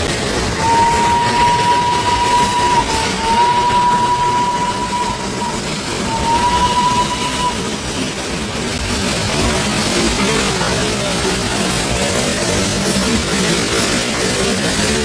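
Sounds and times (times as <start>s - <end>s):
train whistle blasts: 0.4s - 8.0s.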